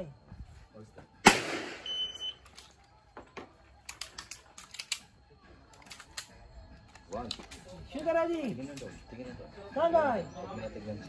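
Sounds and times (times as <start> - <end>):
loud sharp crack: 1.2 - 1.9
pistol shots and hits: 1.2 - 1.9
high electronic beep: 1.8 - 2.4.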